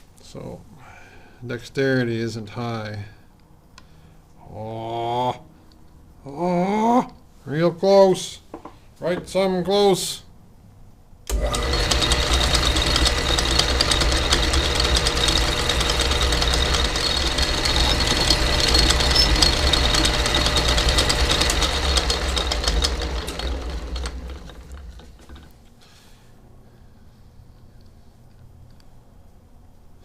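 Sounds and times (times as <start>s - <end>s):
power tool motor rattling: 11.3s - 25.6s.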